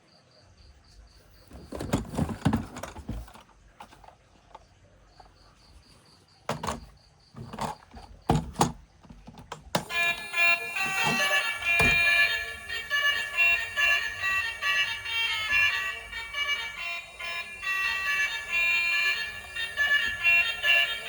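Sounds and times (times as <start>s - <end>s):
toys and packaging clatter: 1.5s - 4.2s, 6.5s - 21.0s.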